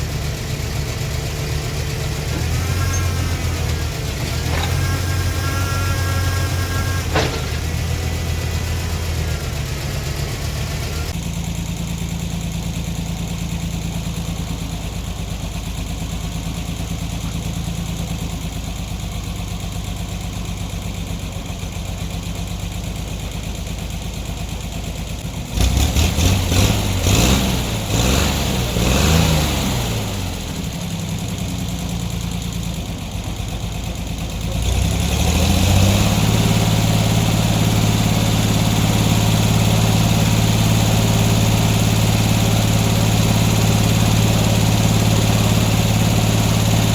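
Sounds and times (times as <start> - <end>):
engine running and revving: 0.0 - 12.2, 25.3 - 46.9
rattling clatter: 2.1 - 5.7, 6.4 - 8.1.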